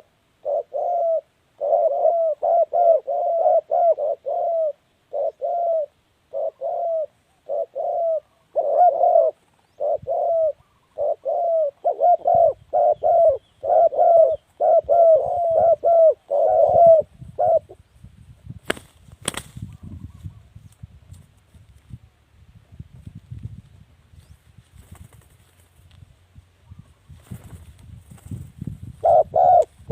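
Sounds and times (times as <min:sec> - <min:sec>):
dove cooing: 0:00.0 - 0:17.9, 0:28.9 - 0:29.9.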